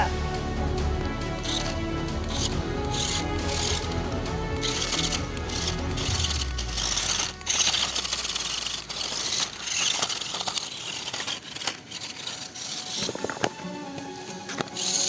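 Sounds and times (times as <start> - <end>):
rc car crunching over stones: 0.8 - 15.0.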